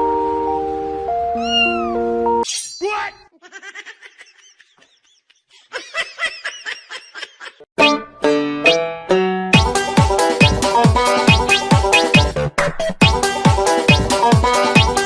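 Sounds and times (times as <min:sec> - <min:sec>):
high mewing calls: 0:01.4 - 0:02.0
cat meowing: 0:01.4 - 0:02.1.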